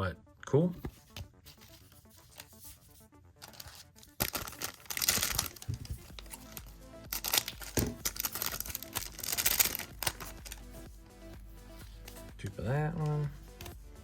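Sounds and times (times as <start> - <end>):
background music: 0.0 - 14.0
plastic wrapper crinkling: 3.4 - 10.6.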